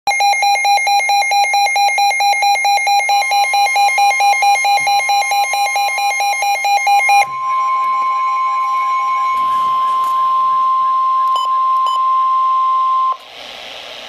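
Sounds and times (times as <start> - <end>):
rapid electronic alert beeping: 0.2 - 13.2
higher electronic tone: 3.3 - 13.3.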